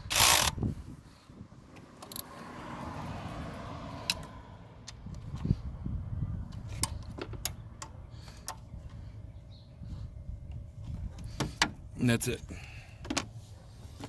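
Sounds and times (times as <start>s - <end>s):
ratchet wrench clicking: 0.0s - 0.6s, 2.0s - 2.3s.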